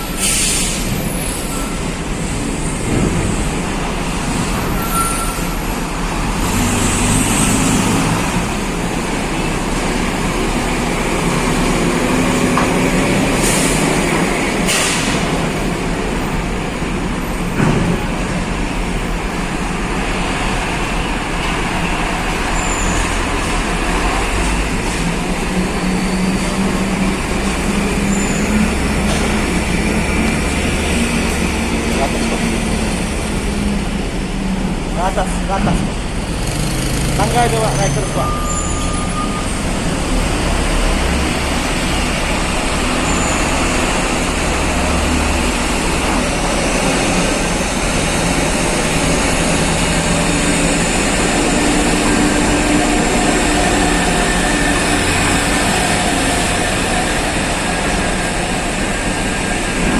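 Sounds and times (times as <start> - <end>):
vehicle engines running: 0.0 - 38.4, 39.2 - 59.9
air-brake hisses: 0.1 - 1.5.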